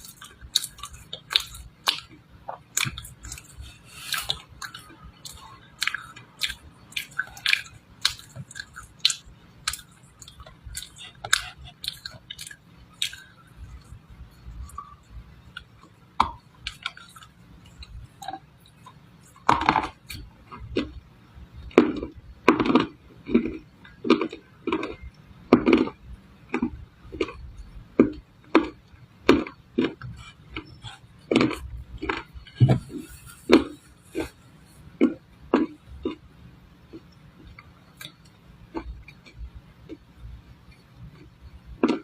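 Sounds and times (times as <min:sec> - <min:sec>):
clay crunching while chewed: 0:00.0 - 0:21.0, 0:21.6 - 0:40.1.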